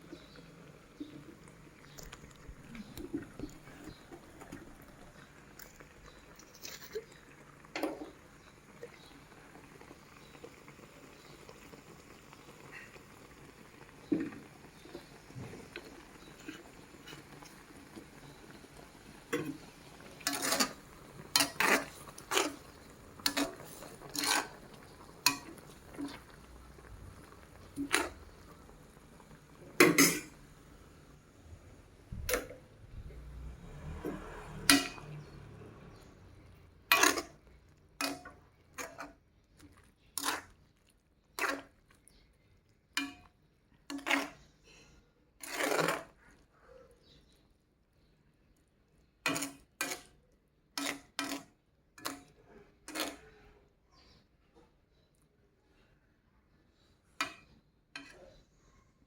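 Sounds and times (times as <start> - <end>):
utensils clinking against dishes: 20.2 - 20.8, 21.4 - 24.6, 29.8 - 30.4, 34.6 - 35.2.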